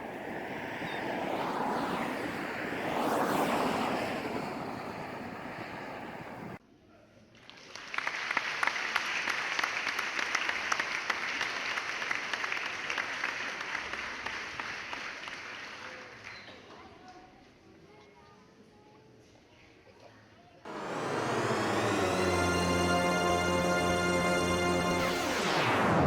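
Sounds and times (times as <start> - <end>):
distant traffic: 0.0 - 6.6, 20.7 - 26.0.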